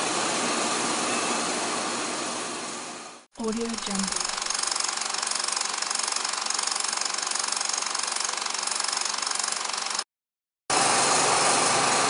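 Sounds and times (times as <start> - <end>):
film projector running: 3.4 - 10.1.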